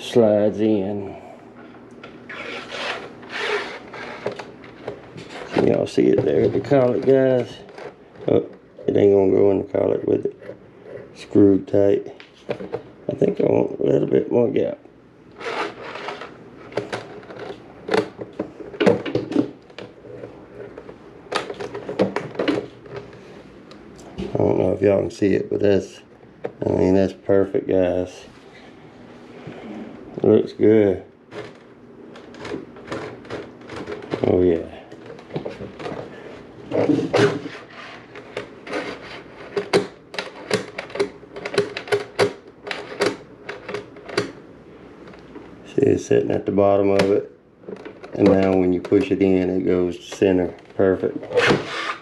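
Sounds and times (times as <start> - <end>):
small clicks and knocks: 38.2 - 44.4.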